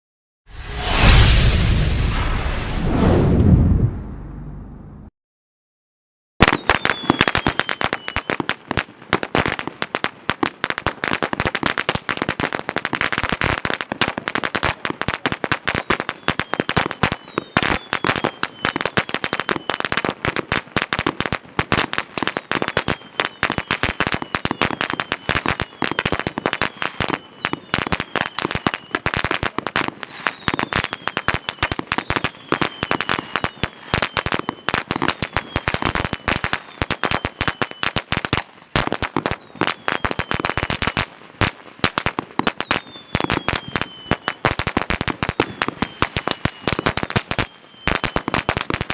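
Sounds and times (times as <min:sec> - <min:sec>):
firecrackers rapid bangs: 0:06.4 - 0:48.9.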